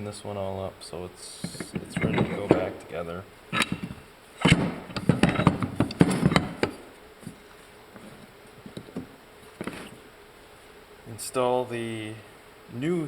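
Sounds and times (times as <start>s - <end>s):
metal parts clicking and knocking: 1.4s - 6.9s, 8.0s - 10.0s.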